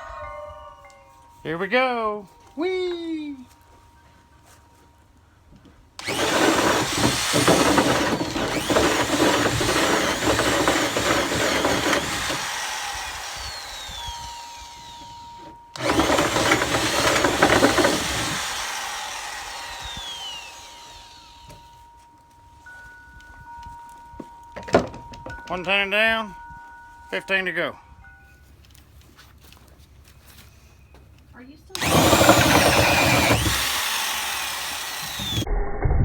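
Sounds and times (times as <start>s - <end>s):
power drill cutter cutting wood: 6.0s - 21.9s, 31.8s - 35.5s.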